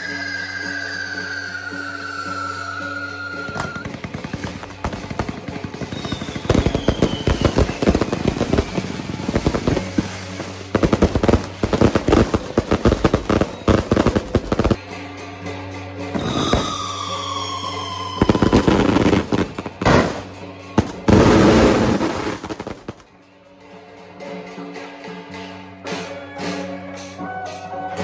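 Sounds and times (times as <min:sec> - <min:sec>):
firecrackers popping: 0:01.0 - 0:14.8, 0:16.1 - 0:23.2.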